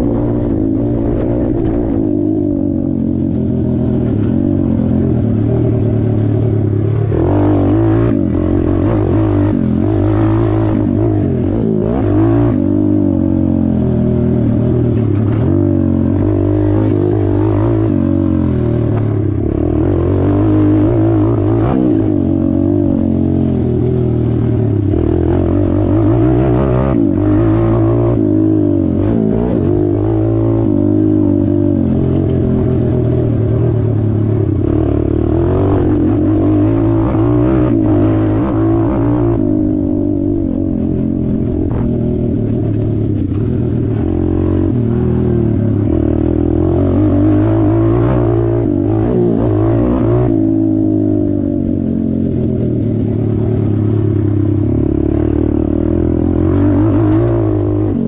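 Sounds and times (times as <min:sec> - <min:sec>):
motorbike engine revving: 0:00.0 - 0:58.0.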